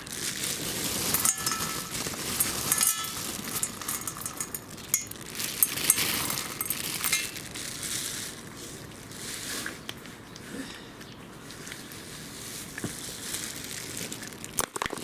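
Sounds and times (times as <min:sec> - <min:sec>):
small hard objects clinking: 0:00.0 - 0:08.5.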